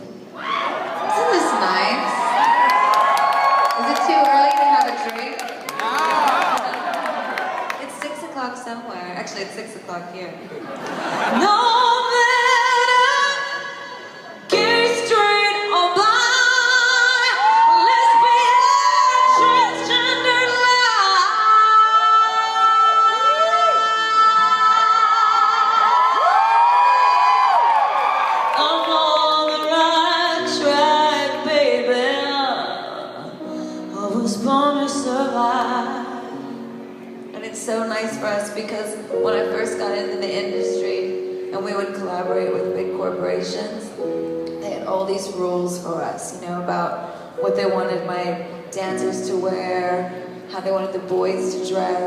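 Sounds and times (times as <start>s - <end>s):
woman singing with vibrato: 11.3s - 26.2s, 28.6s - 36.4s
piano accompaniment: 14.4s - 26.1s, 28.7s - 52.0s.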